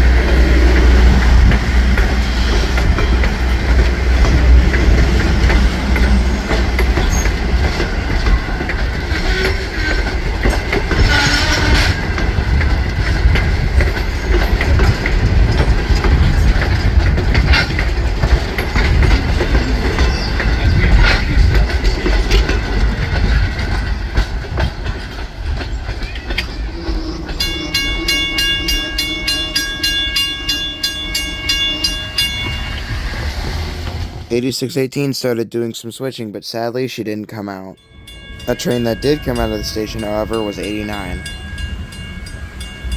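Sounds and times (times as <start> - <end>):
train rumble and wheel clatter: 0.0 - 34.4, 37.8 - 42.9
bell ringing rapidly: 27.4 - 32.9, 37.5 - 42.9.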